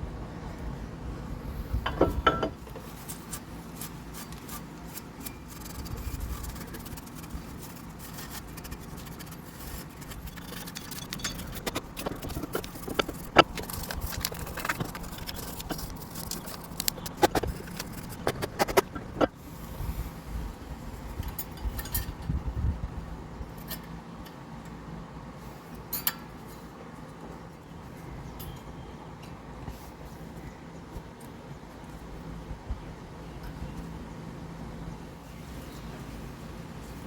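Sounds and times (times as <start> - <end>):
low steady hum: 0.0 - 37.0
light metal scraping: 1.5 - 20.2.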